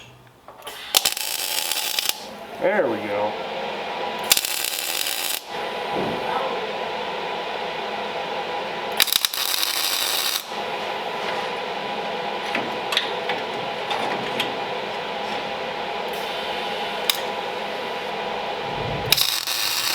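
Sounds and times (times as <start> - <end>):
steady hum: 14.7 - 19.9
loud hiss: 18.5 - 19.9.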